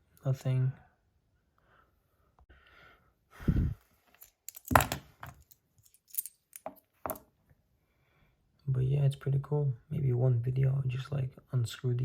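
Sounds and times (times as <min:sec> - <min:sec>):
metal parts clinking: 0:04.2 - 0:07.2.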